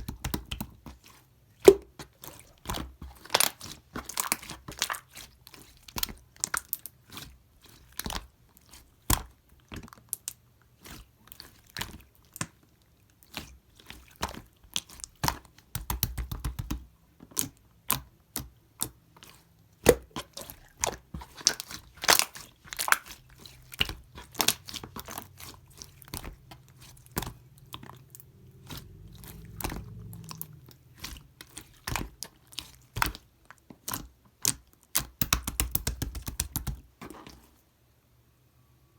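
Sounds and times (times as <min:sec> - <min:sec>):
slime squished by hand: 0:00.0 - 0:10.1, 0:13.2 - 0:37.5
faint low rumble: 0:23.8 - 0:32.3.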